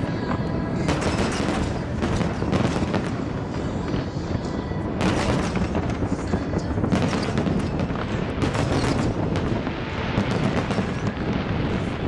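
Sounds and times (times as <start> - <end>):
fireworks crackling: 0.0 - 12.0
sharp firework reports: 5.0 - 12.0
firework shell bursts: 6.8 - 9.5.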